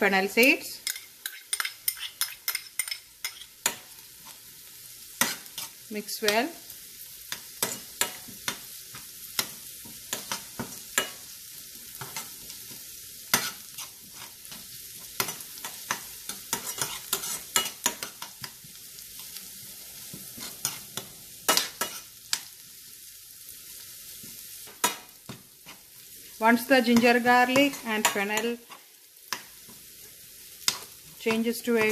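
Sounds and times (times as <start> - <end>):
food sizzling in oil: 0.0 - 31.9
utensil scraping a pan: 13.3 - 14.6, 15.2 - 18.2, 20.1 - 22.1.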